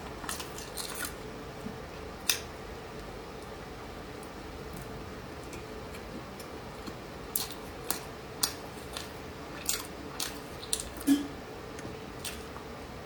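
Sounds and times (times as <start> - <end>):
crisp chewing crackles: 0.0 - 1.2, 5.9 - 11.2, 12.2 - 12.6
faint steady hum: 0.0 - 13.0.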